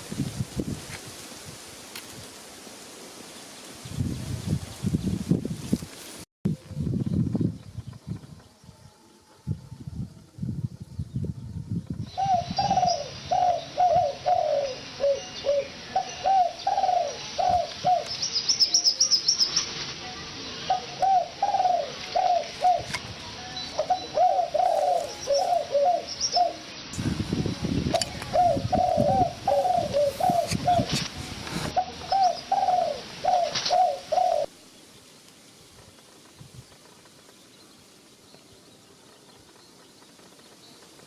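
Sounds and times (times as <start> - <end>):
birds calling: 12.1 - 19.8, 20.4 - 27.0, 27.9 - 31.0, 31.6 - 35.0.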